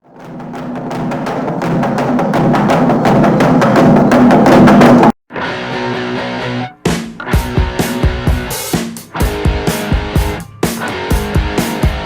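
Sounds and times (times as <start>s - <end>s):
log drum roll: 0.1s - 5.1s.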